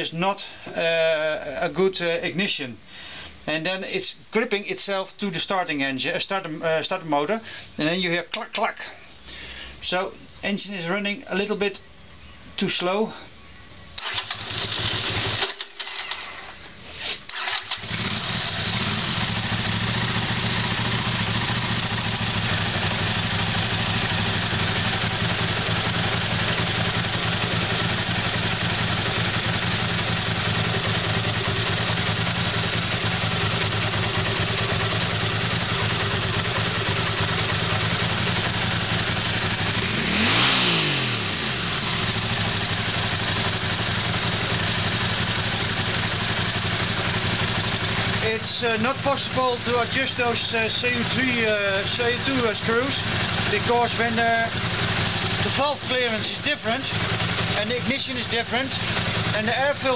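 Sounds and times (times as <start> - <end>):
motorcycle engine idling: 13.5 - 16.0, 17.3 - 59.9
engine revving: 14.0 - 16.1, 17.3 - 59.9
starter motor cranking: 14.0 - 16.6, 17.3 - 18.8.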